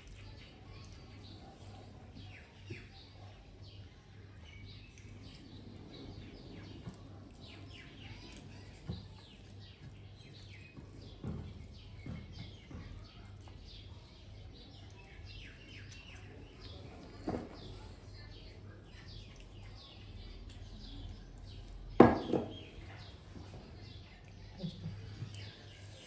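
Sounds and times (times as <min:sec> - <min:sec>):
small birds chirping: 0:00.0 - 0:26.0.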